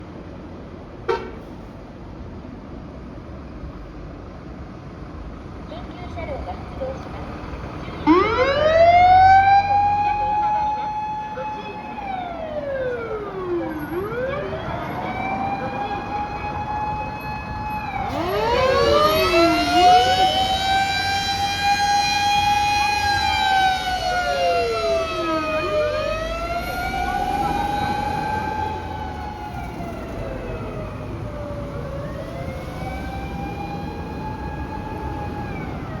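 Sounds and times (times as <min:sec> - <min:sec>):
low vehicle noise: 0:00.0 - 0:36.0
mechanical siren wailing: 0:08.0 - 0:36.0.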